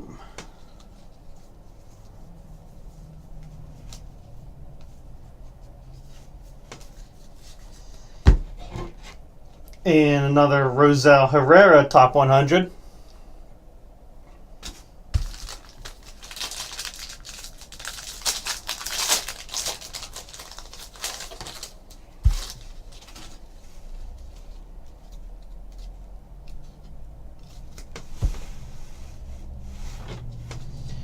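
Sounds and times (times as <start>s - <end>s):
foil wrapper tearing and crinkling: 15.2s - 23.4s.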